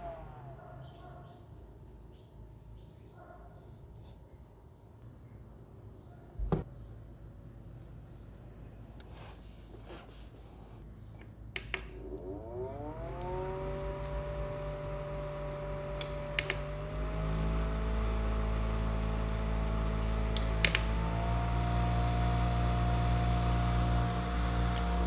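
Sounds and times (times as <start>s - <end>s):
small electric fan whirring: 0.0s - 1.9s, 11.5s - 25.0s
fan switch clicking: 15.9s - 17.1s, 20.3s - 21.1s.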